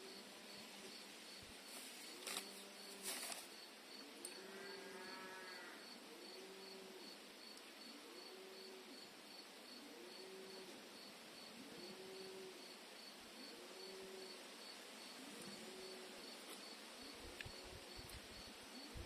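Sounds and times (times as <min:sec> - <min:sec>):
cricket chirping: 0:00.0 - 0:19.0.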